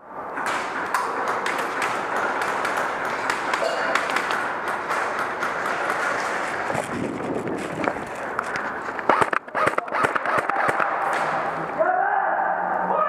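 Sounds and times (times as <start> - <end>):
airsoft guns firing: 0.4 - 6.7, 9.0 - 11.6
pellets striking surfaces: 0.4 - 8.1.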